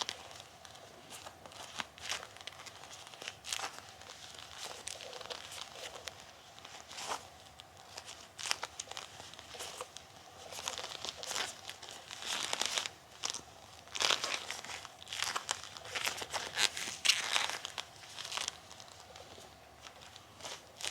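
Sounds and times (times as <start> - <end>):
rubber gloves crinkling and rasping: 0.0 - 20.9.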